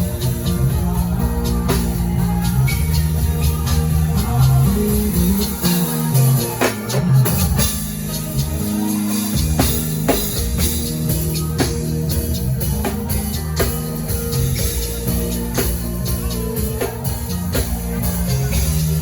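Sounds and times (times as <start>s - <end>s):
drum kit beat: 0.0s - 19.0s
live band playing: 0.0s - 19.0s.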